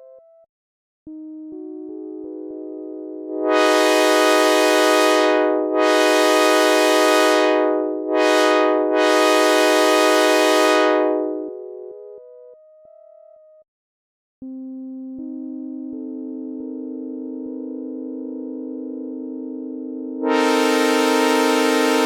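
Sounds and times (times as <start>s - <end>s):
synthesizer held chord: 1.1s - 12.3s, 15.2s - 22.0s
synthesizer train horn blasts: 3.3s - 11.6s, 20.2s - 22.0s.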